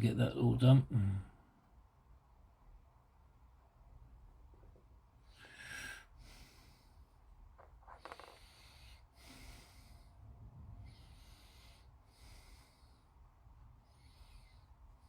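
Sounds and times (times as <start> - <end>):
man breathing through nose: 5.2 - 7.2, 8.1 - 13.2.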